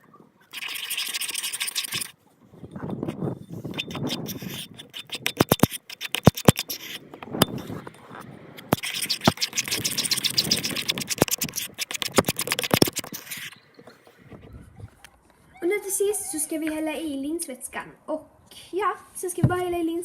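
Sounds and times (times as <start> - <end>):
utensil scraping a bowl: 0.5 - 14.5.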